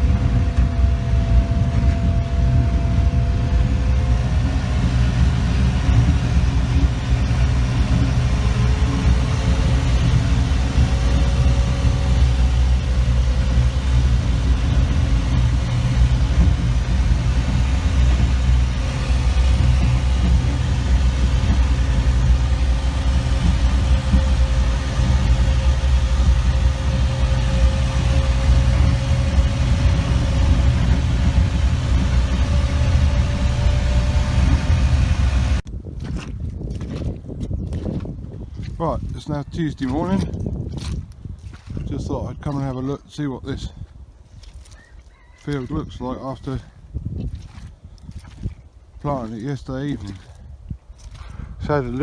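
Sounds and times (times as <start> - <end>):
faint steady whine: 0.0 - 35.6
tractor engine droning: 0.0 - 36.2.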